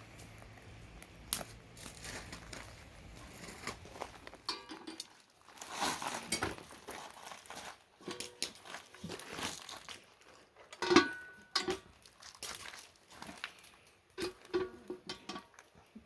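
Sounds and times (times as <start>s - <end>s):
metal cookware clinking: 4.4s - 5.2s, 8.0s - 8.6s, 10.8s - 11.9s, 14.2s - 15.6s.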